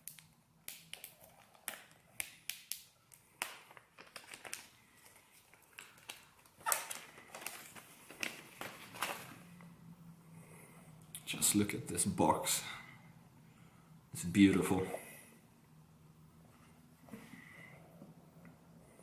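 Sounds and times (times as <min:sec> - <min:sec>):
plastic wrap crinkling: 0:00.0 - 0:09.7.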